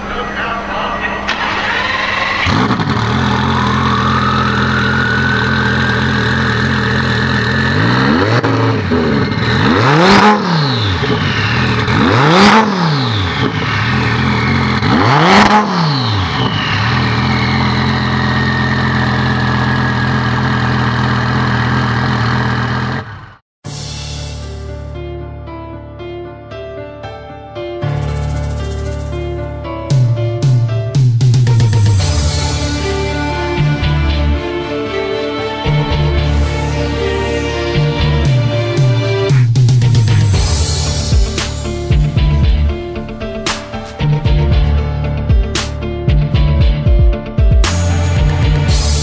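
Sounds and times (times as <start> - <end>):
car engine idling and revving: 0.0 - 23.4, 31.4 - 46.8, 47.5 - 49.0
high turbo whine: 0.0 - 23.4, 47.6 - 49.0.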